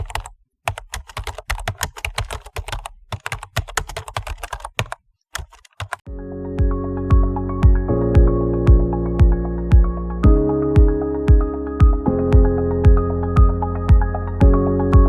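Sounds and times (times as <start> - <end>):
keyboard typing clicks: 0.0 - 6.1
music: 6.1 - 15.0.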